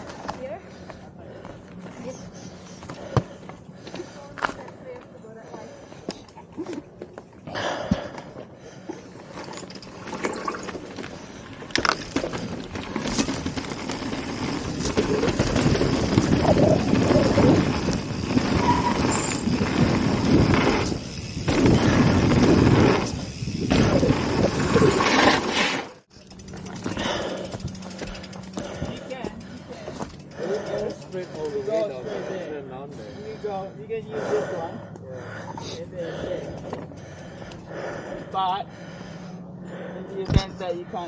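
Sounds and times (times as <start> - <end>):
bike tyres and frame rattling: 6.7 - 32.3
wind buffeting microphone: 14.5 - 25.0.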